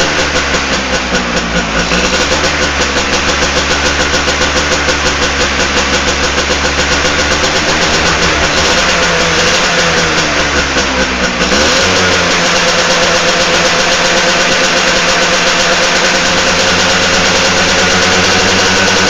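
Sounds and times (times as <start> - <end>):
two-stroke motorcycle engine idling: 0.0 - 19.0.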